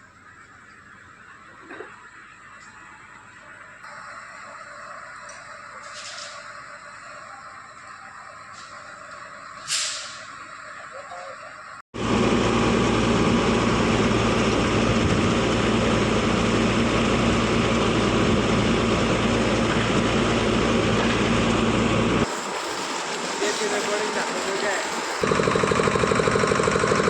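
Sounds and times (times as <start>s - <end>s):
diesel engine drone: 7.3s - 27.0s.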